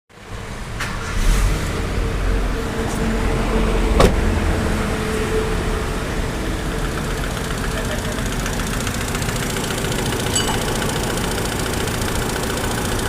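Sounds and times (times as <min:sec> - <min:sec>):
car engine idling: 0:00.4 - 0:13.0.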